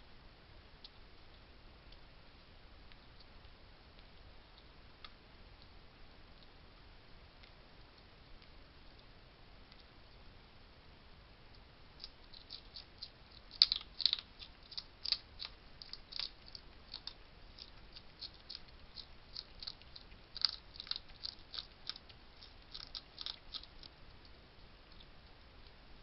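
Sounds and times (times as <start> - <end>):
hedgehog crunching dry food: 12.0 - 25.8.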